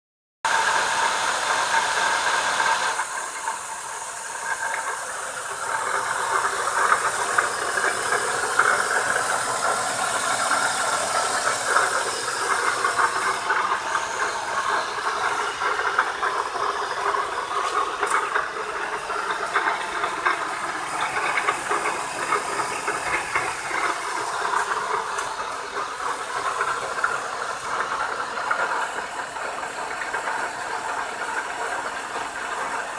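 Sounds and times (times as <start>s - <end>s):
strange engine noise: 0.5s - 32.8s
car engine running: 5.6s - 27.8s.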